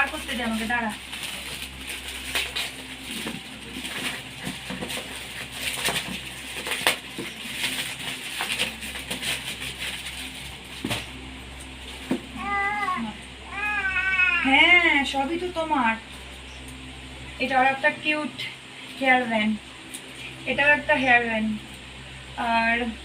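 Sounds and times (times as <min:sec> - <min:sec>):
plastic packaging crinkling: 0:00.0 - 0:14.2
baby squealing cries: 0:12.4 - 0:14.6.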